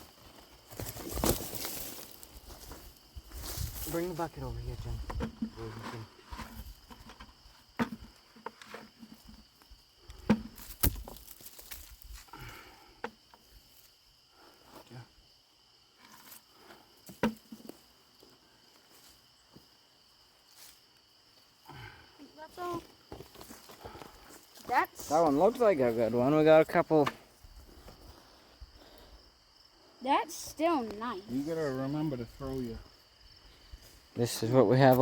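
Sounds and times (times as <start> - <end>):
insects chirring: 0.0 - 35.0.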